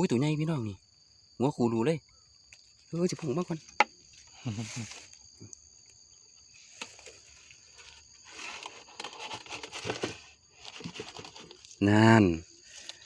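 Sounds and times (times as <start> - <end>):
insects trilling: 0.0 - 13.0
rustling: 6.4 - 11.8.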